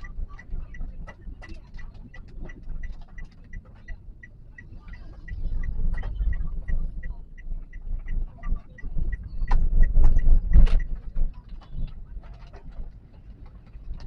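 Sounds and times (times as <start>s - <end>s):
car engine and road rumble: 0.0s - 14.0s
turn signal ticking: 0.0s - 14.0s.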